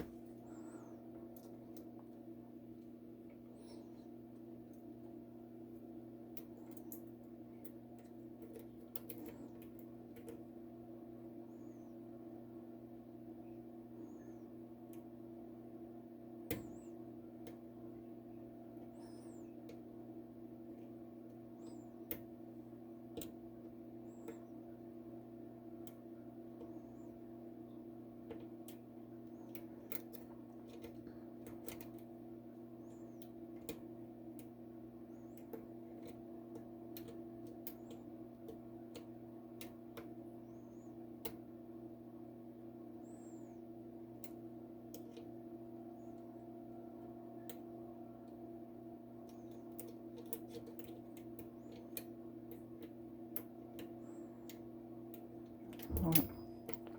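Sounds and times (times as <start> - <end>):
steady low hum: 0.0 - 56.9.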